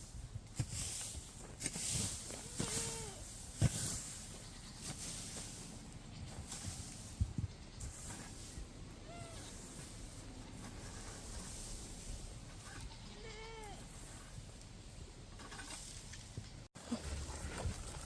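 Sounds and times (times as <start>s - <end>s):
low outdoor rumble: 0.0s - 18.0s
goat bleating: 2.3s - 3.3s, 9.0s - 9.6s, 12.6s - 13.9s.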